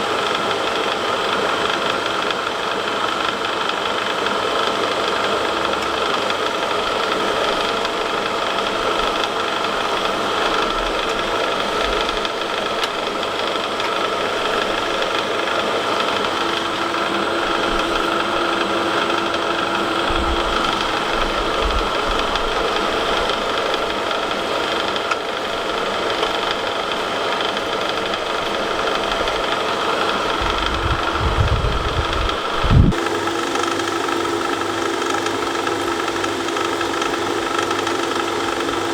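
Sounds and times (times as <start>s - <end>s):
forge running steadily: 0.9s - 38.9s.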